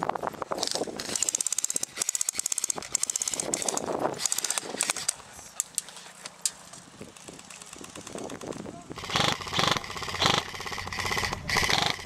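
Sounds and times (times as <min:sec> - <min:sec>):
airsoft gun firing full-auto: 0:09.0 - 0:12.0.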